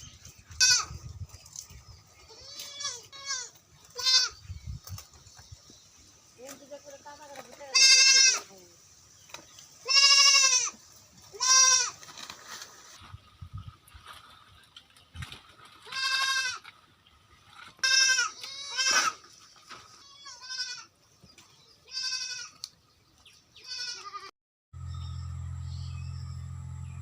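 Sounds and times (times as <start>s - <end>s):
goats bleating: 2.3s - 4.4s, 7.7s - 8.5s, 9.8s - 12.0s, 15.8s - 16.7s, 17.8s - 19.2s, 20.0s - 20.9s, 21.9s - 22.6s, 23.6s - 24.3s
steady low hum: 24.8s - 27.0s.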